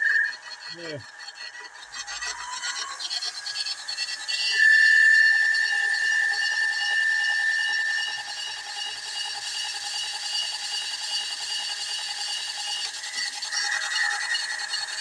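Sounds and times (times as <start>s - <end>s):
high ringing tone from cutting: 0.0s - 1.0s, 3.6s - 15.0s
lathe gear train whining: 0.0s - 10.1s.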